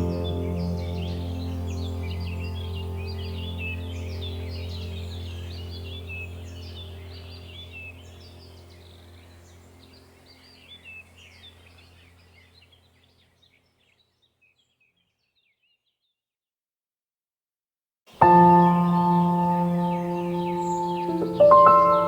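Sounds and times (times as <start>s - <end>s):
low steady drone: 0.0s - 11.0s, 18.3s - 22.0s
small birds chirping: 0.0s - 16.2s, 18.1s - 22.0s.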